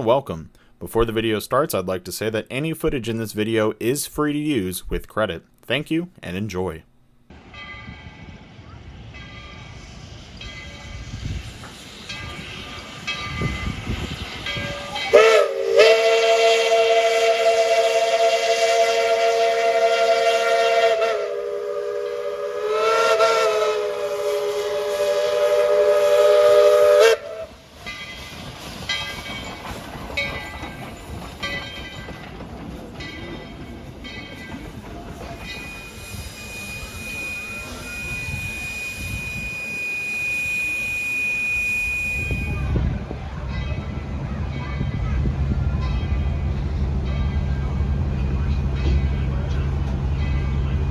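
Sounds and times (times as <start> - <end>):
steam whistle chord: 7.8 - 27.6, 35.4 - 42.8
steady steam hiss: 8.1 - 43.5.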